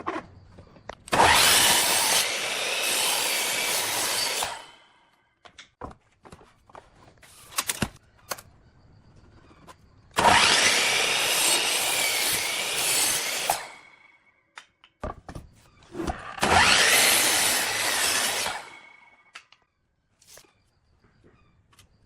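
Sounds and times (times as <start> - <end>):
power tool cutting wood: 1.1 - 4.9, 10.2 - 14.0, 16.1 - 19.2.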